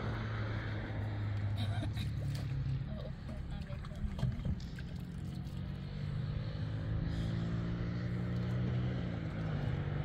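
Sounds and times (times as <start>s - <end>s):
engine running: 0.0s - 10.0s.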